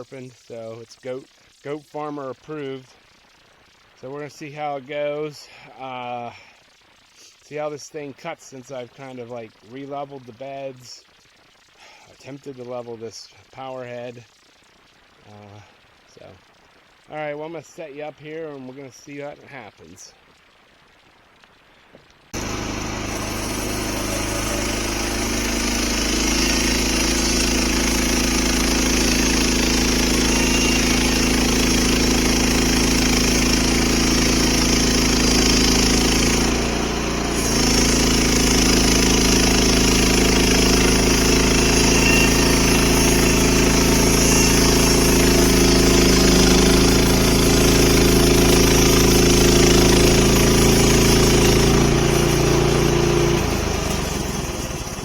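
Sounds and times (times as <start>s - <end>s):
band saw blade cutting log: 22.4s - 55.0s
gas engine running: 22.4s - 55.0s.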